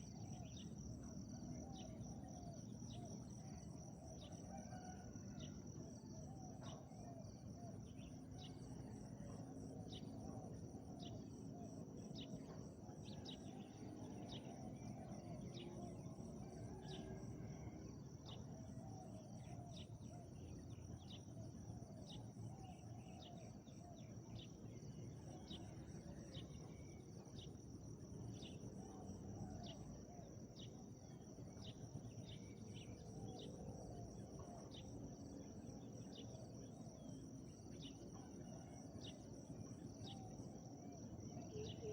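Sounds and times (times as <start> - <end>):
insects trilling: 0.0 - 41.9
faint low dove cooing: 40.0 - 41.9.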